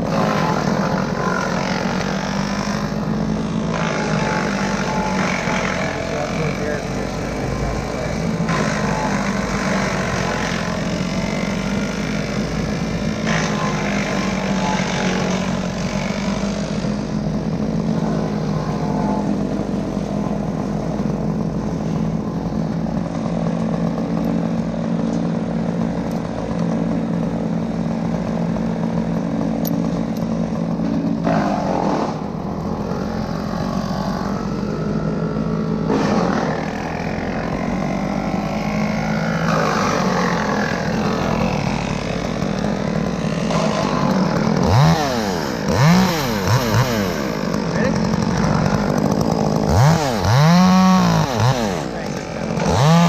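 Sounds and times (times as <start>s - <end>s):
chainsaw engine running: 0.0s - 53.0s.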